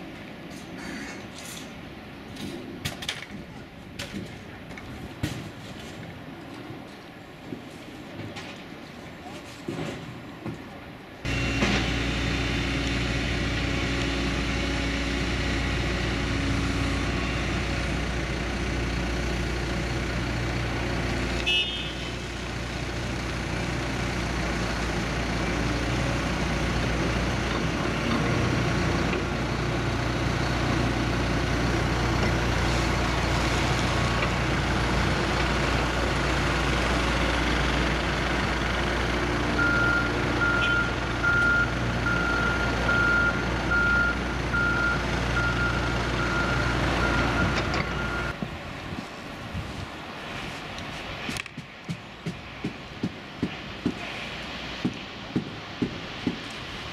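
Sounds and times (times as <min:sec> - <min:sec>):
diesel engine running: 0:11.2 - 0:48.7
reversing alarm beeping: 0:39.6 - 0:48.4.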